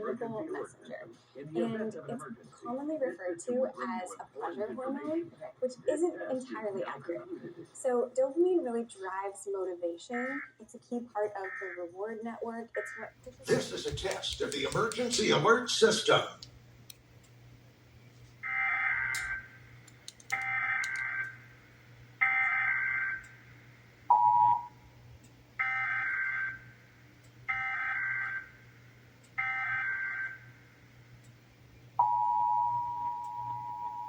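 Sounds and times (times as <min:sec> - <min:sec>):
two-tone attention signal: 0:24.1 - 0:24.8, 0:32.0 - 0:34.0.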